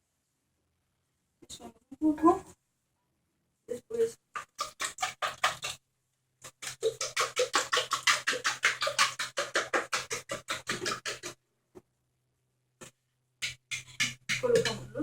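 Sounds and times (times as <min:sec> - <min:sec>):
spoon stirring and scraping a pan: 0:04.4 - 0:05.8, 0:06.4 - 0:11.4, 0:13.4 - 0:15.0.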